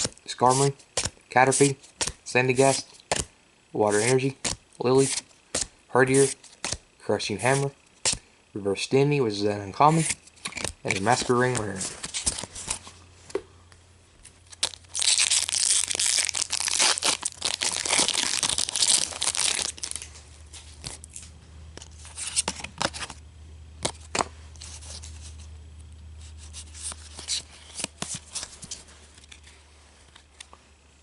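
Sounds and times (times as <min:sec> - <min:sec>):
foil wrapper tearing and crinkling: 0:14.5 - 0:20.1
cards clicking and tapping: 0:23.8 - 0:24.3.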